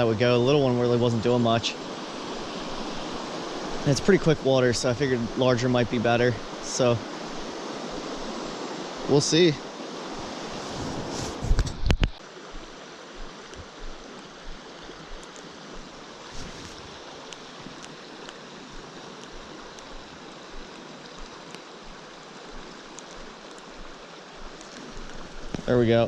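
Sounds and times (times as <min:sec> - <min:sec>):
stream water rushing: 0:00.0 - 0:26.0
faint ticks: 0:11.5 - 0:16.0, 0:16.6 - 0:25.7.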